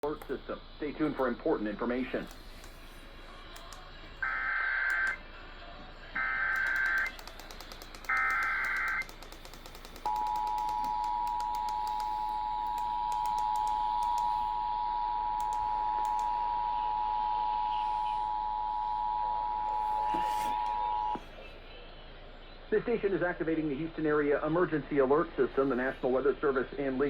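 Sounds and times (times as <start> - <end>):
radio crackle: 0.0 - 5.2, 6.2 - 21.3.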